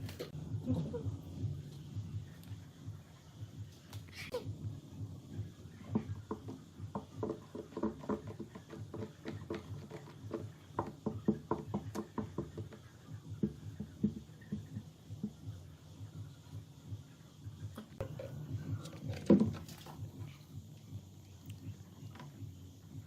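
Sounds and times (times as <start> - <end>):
light tapping and knocking: 5.8 - 15.7, 17.8 - 20.2.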